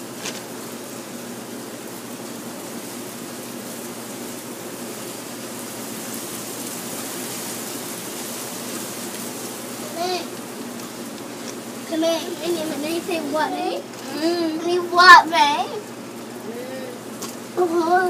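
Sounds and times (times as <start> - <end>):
steady background noise: 0.0 - 18.0.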